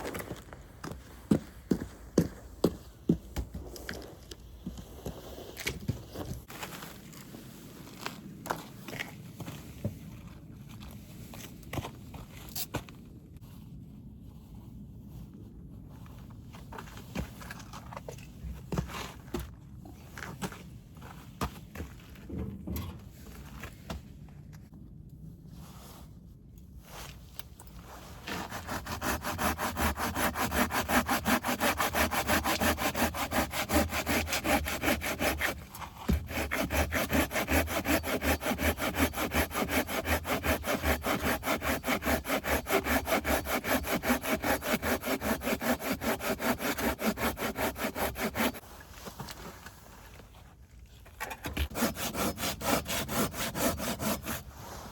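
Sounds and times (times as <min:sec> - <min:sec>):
hand saw cutting firewood: 0:28.2 - 0:48.6, 0:51.4 - 0:54.9.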